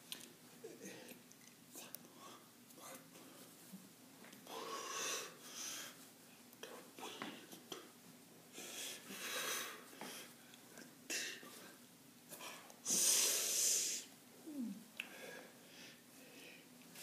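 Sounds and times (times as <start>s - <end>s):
whispery mouth sounds: 14.4s - 15.0s.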